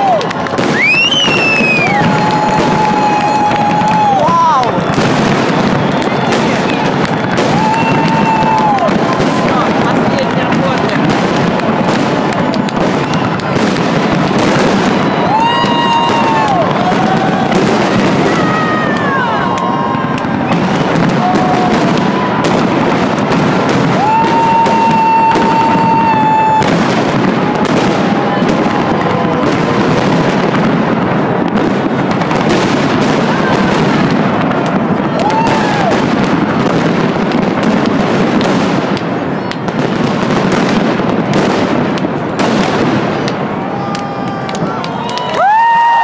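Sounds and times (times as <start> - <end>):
firework whistles: 0.0 - 9.4, 12.6 - 28.6
fireworks bangs and crackles: 0.0 - 46.0.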